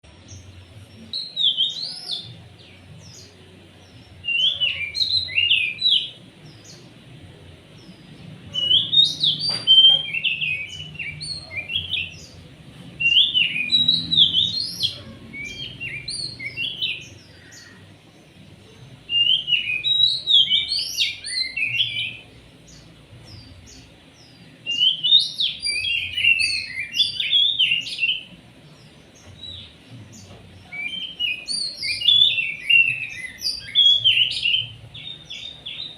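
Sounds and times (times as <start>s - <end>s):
bird singing whistled phrases: 8.5s - 12.1s, 13.0s - 17.0s, 19.1s - 22.2s, 24.7s - 28.3s, 30.6s - 35.6s.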